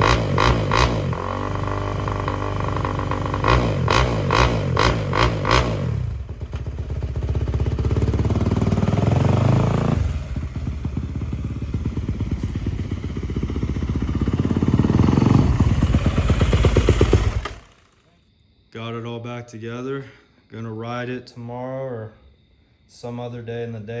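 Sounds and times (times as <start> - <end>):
dirt bike engine revving: 0.0 - 18.0.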